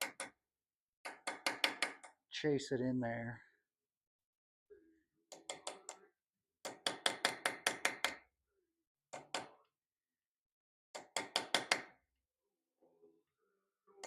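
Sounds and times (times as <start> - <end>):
hammer tapping metal tool: 6.6 - 8.2.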